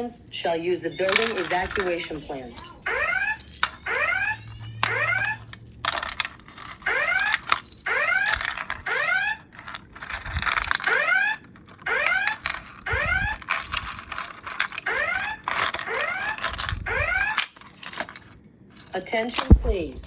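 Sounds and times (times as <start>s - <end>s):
spoken messages: 0.0s - 6.1s, 18.9s - 20.0s
fire alarm whoop tone: 2.8s - 5.6s.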